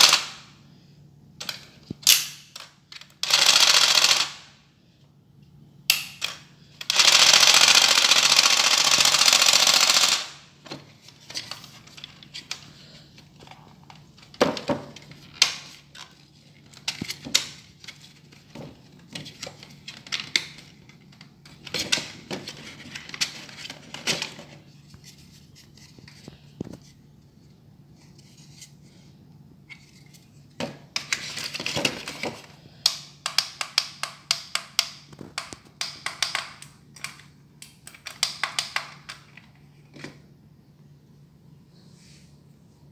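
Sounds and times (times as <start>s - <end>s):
toy jigsaw buzzing: 3.2s - 4.5s, 6.8s - 10.4s.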